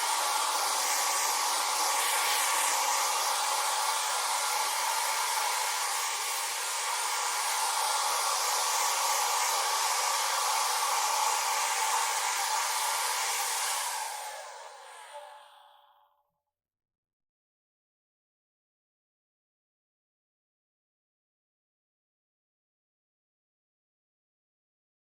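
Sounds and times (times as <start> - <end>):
hair dryer running: 0.0 - 15.9.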